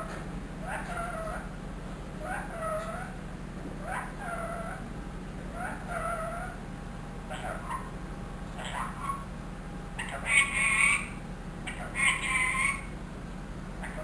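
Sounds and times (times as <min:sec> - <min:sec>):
parrot calling: 0:00.0 - 0:01.6, 0:02.2 - 0:03.2, 0:03.8 - 0:04.9, 0:05.5 - 0:06.6, 0:07.3 - 0:09.3, 0:10.0 - 0:13.0, 0:13.8 - 0:14.0
steady low hum: 0:00.0 - 0:14.0.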